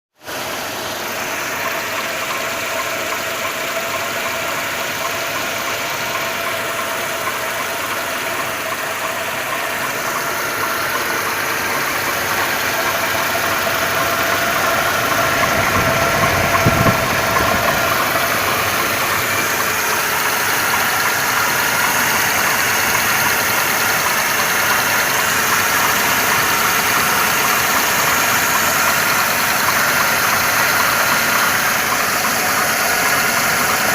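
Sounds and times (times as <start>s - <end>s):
engine knocking: 0.2s - 33.9s
low rumble: 14.0s - 19.3s.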